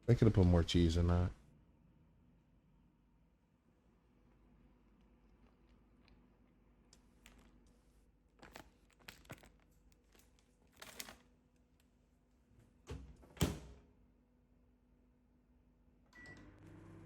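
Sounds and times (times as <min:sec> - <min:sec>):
food packaging crinkling: 0:05.2 - 0:11.9.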